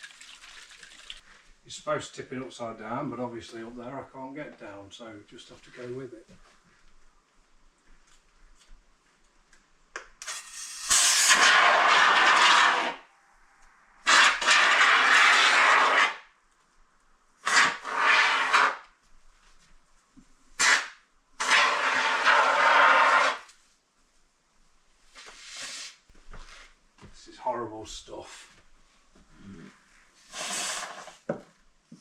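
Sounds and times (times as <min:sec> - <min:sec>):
aerosol foam spraying: 0:30.3 - 0:31.2.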